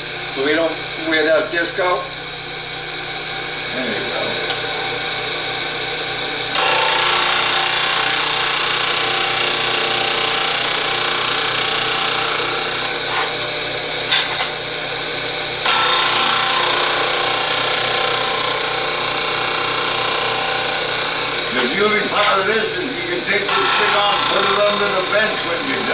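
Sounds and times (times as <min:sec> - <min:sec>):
disc sander motor hum: 0:00.0 - 0:25.9
metal grinding on disc: 0:06.5 - 0:14.7, 0:15.6 - 0:25.9.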